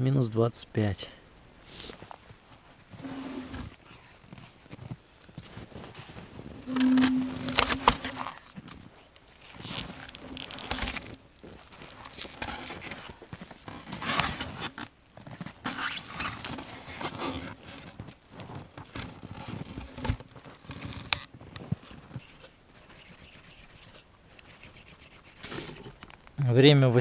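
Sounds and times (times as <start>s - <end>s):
gear crunching and scraping: 7.4s - 21.2s.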